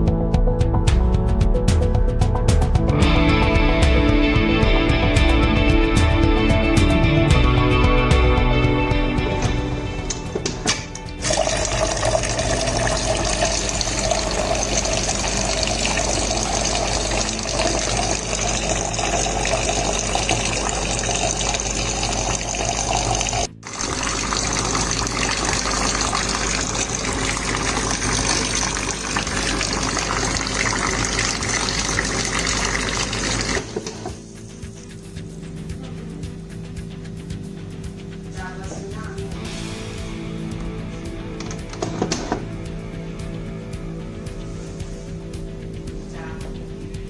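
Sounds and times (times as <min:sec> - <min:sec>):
water splashing into a container: 0:09.4 - 0:34.2.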